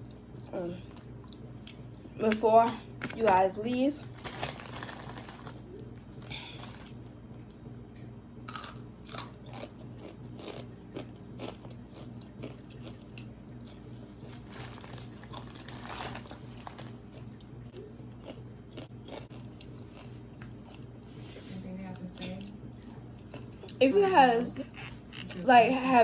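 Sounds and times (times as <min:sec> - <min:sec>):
steady low hum: 0:00.0 - 0:26.0
person chewing crunchy food: 0:03.8 - 0:07.5, 0:08.5 - 0:21.3, 0:22.4 - 0:23.8, 0:24.6 - 0:25.4.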